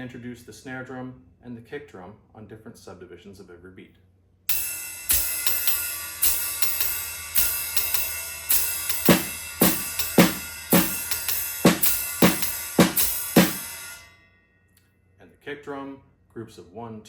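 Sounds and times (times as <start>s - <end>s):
ride cymbal swing pattern: 4.5s - 14.1s
snare drum hits: 8.9s - 13.8s.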